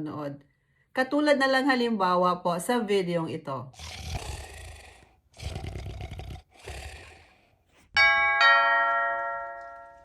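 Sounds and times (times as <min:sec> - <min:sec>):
ding-dong doorbell chime: 0:08.0 - 0:10.0.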